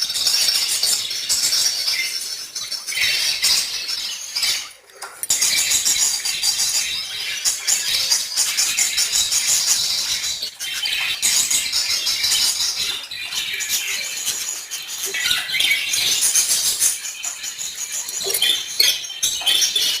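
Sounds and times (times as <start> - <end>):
budgerigars chirping: 5.4 - 20.0.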